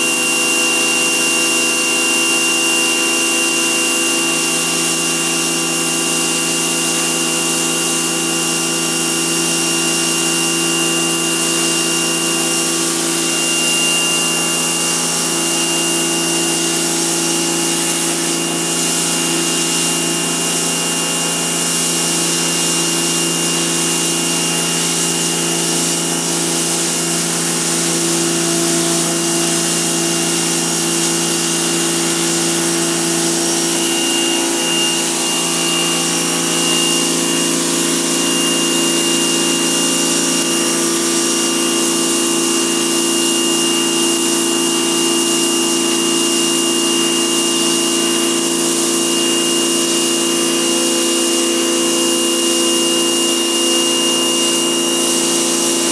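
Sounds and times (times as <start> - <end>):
pressure washer motor hum: 0.0 - 55.9
thin high whine: 0.0 - 55.9
water jet hissing: 12.6 - 41.3.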